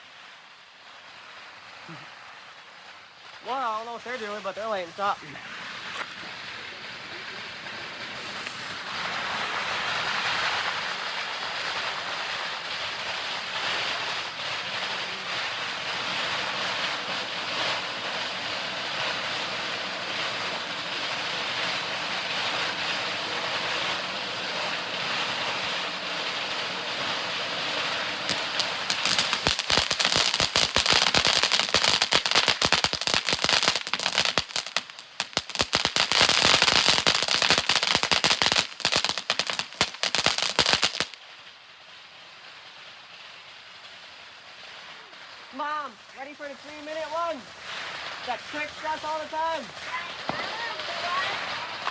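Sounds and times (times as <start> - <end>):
firework fountain hissing and crackling: 0.0 - 51.9.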